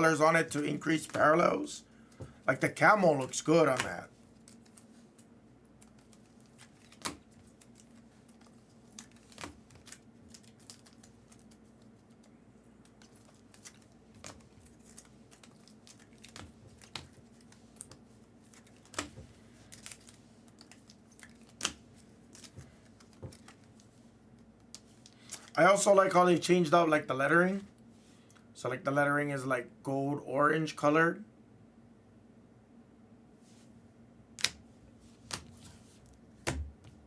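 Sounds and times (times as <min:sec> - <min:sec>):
faint steady hum: 0:00.0 - 0:37.0
cards clicking and tapping: 0:03.7 - 0:04.8, 0:18.6 - 0:23.7.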